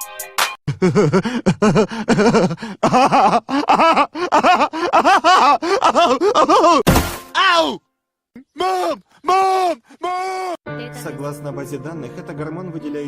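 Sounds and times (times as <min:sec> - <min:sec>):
rapid wordless vocal cries: 0:00.8 - 0:06.8, 0:08.4 - 0:10.6.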